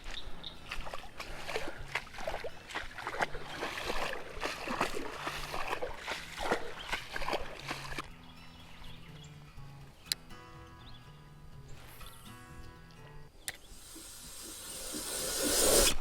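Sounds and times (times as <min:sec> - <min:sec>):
water splashing and sloshing: 0:00.0 - 0:08.1.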